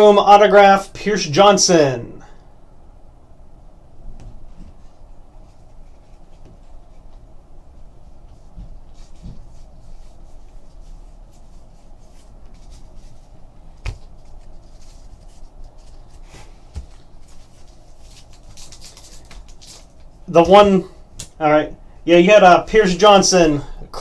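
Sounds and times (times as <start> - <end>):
trading cards rustling: 12.6 - 21.4.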